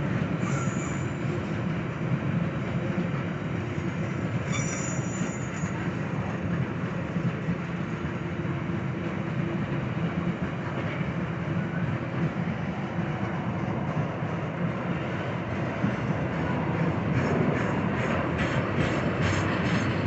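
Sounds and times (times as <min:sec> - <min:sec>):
train wheels rumbling on rail: 0:00.0 - 0:20.0
high wheel squeal: 0:00.4 - 0:01.4, 0:04.4 - 0:06.0.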